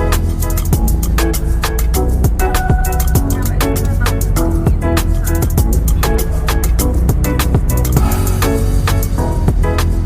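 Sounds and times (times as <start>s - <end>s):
deep bass line: 0.0s - 10.0s
kick drum: 0.7s - 1.0s, 2.2s - 3.4s, 4.5s - 6.1s, 7.0s - 8.4s, 9.5s - 9.8s.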